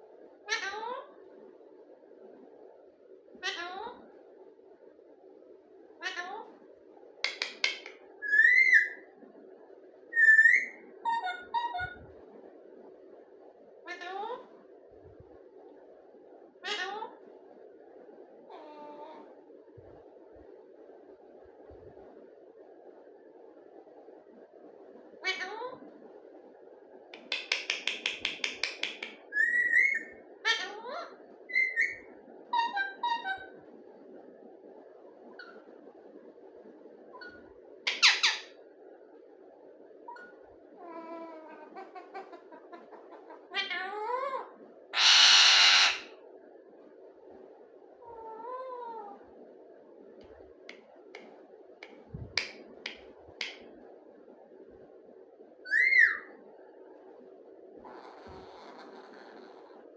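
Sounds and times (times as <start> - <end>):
parrot clicking: 7.2 - 8.0, 27.2 - 29.2, 51.2 - 53.6
parrot calling: 7.2 - 9.0, 10.1 - 11.9, 27.2 - 33.5, 37.2 - 38.6, 40.1 - 46.1, 55.6 - 56.3
parrot squawking: 7.3 - 9.0, 10.2 - 11.9, 27.2 - 32.0, 37.2 - 38.5, 40.8 - 44.4, 45.0 - 46.1, 55.7 - 56.3.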